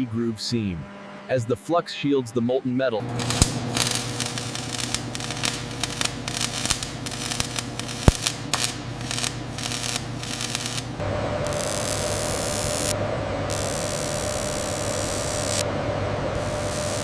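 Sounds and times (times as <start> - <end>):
machine hum: 0.0 - 17.0
welding crackling: 3.0 - 15.6, 16.3 - 17.0.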